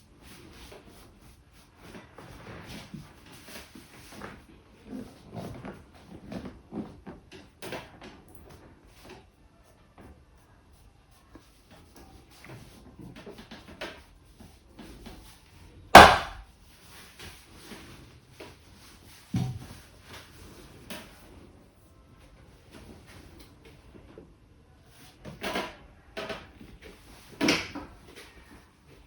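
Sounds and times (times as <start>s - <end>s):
dull thump: 16.0s - 16.4s
loud sharp slap: 16.0s - 16.4s.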